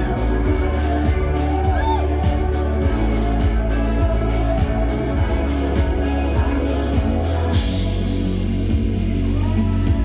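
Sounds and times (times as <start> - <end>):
live band playing: 0.0 - 10.0
steady drum beat: 0.0 - 10.0.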